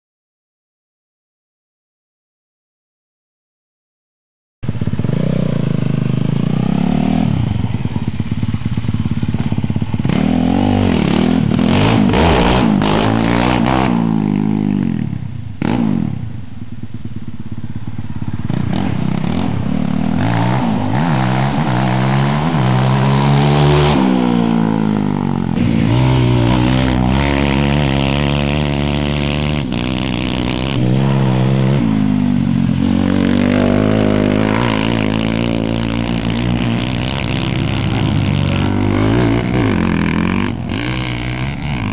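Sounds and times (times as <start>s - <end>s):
atv engine revving: 4.6s - 41.9s.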